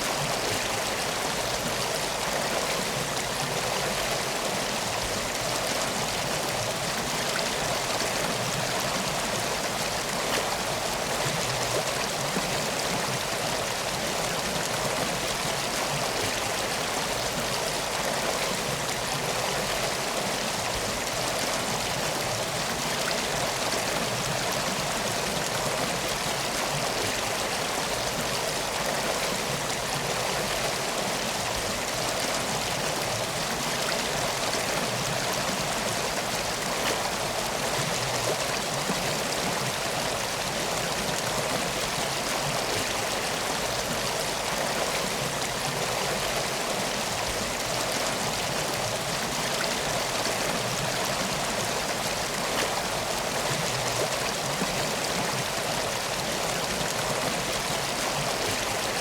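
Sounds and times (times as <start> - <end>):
river water flowing: 0.0 - 59.0.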